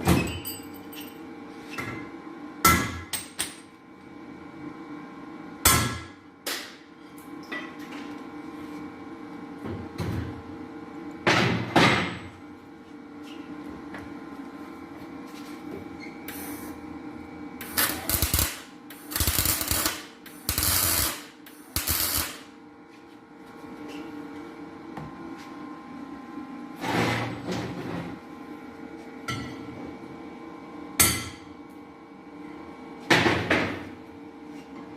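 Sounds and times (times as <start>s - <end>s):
welding crackling: 17.6s - 22.5s.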